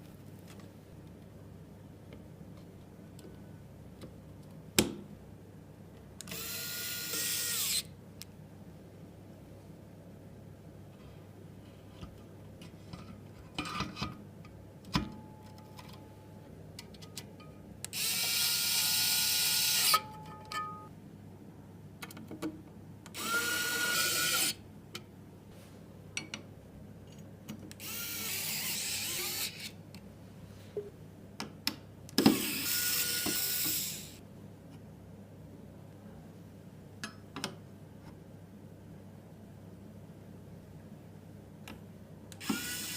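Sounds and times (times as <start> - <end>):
electric screwdriver running: 6.3 - 7.9, 18.0 - 20.0, 23.2 - 24.6, 27.8 - 29.7, 32.4 - 34.2, 42.4 - 42.9.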